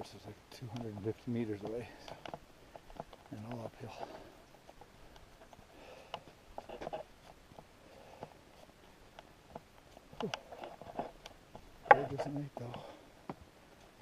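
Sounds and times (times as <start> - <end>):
faint footsteps: 0.0 - 14.0
rustling: 0.1 - 14.0.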